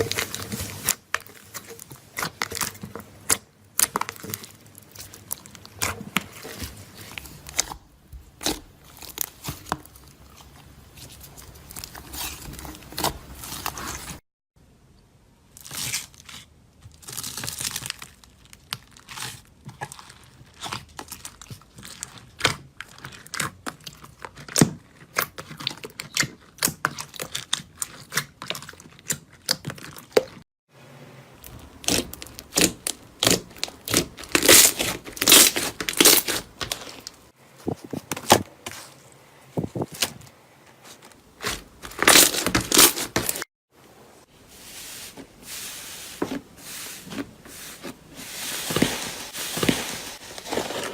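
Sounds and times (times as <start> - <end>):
crunchy slime crackling: 15.6 - 30.4, 31.4 - 39.1, 39.8 - 43.5.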